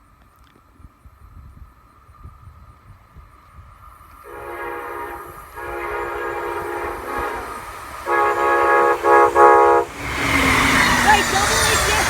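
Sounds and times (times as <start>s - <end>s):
locomotive air horn blasts: 4.2s - 10.4s.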